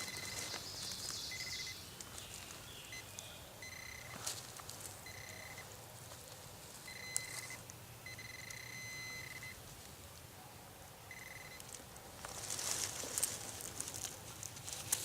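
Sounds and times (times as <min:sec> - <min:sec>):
metal detector tone: 0:00.0 - 0:00.6, 0:01.3 - 0:01.8, 0:03.6 - 0:04.2, 0:05.0 - 0:05.7, 0:06.9 - 0:09.6, 0:11.1 - 0:11.7.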